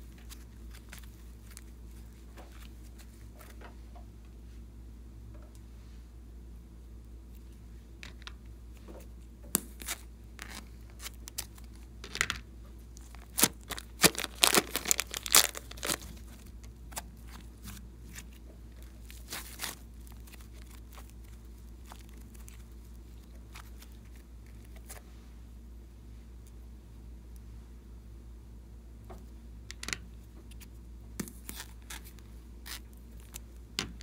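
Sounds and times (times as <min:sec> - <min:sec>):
slime squished by hand: 0:13.0 - 0:22.6.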